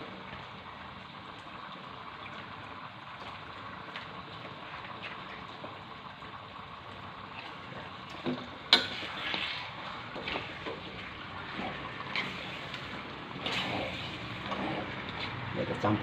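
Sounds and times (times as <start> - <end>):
chicken sizzling in pot: 0.0 - 16.0.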